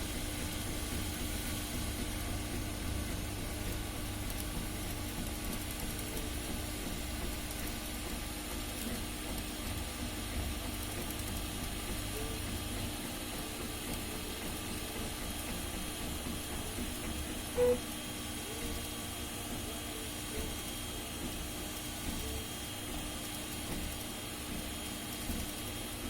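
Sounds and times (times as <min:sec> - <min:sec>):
three-d printer hum and fan hiss: 0:00.0 - 0:26.0
loud printer tone: 0:11.8 - 0:24.0
short motor tones: 0:17.6 - 0:17.9.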